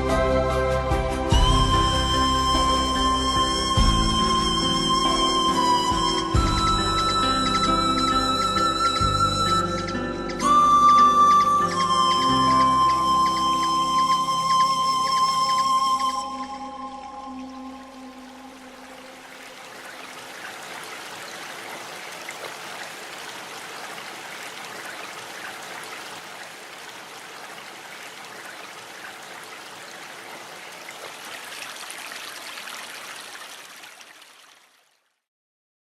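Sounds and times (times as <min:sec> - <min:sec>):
pan-flute music: 0:00.0 - 0:19.2
running water stream: 0:00.0 - 0:35.3.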